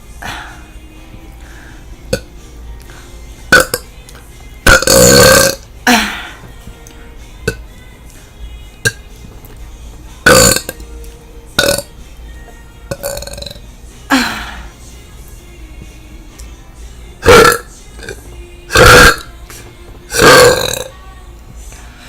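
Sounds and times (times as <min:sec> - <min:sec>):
woman burping: 0:03.5 - 0:03.9, 0:04.7 - 0:06.4, 0:10.3 - 0:10.8, 0:11.6 - 0:11.9, 0:12.9 - 0:14.7, 0:17.2 - 0:19.3, 0:20.1 - 0:20.9.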